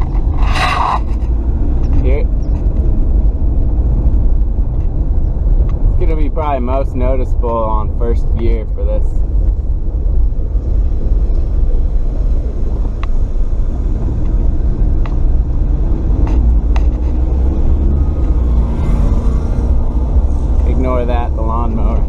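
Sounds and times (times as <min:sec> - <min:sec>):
car engine pulling: 0:00.0 - 0:22.0
low exhaust rumble: 0:00.0 - 0:22.0.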